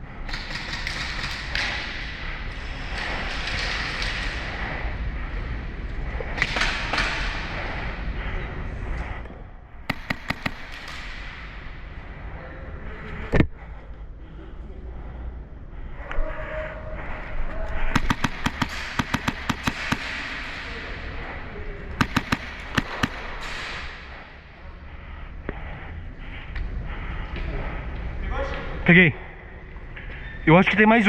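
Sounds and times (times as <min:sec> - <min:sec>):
airsoft guns firing: 0:00.2 - 0:02.1, 0:06.4 - 0:07.6, 0:09.8 - 0:11.8, 0:17.9 - 0:21.2, 0:21.9 - 0:24.5
loud sharp crack: 0:09.9 - 0:11.8, 0:17.9 - 0:20.9, 0:22.0 - 0:24.4.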